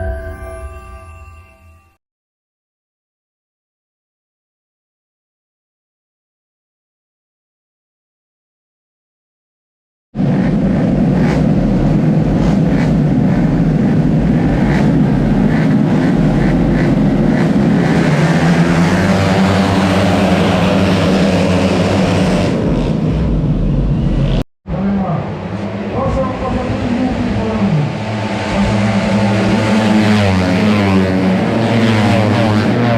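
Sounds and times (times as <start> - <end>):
scooter engines at high revs: 10.2 - 24.4, 25.5 - 32.9.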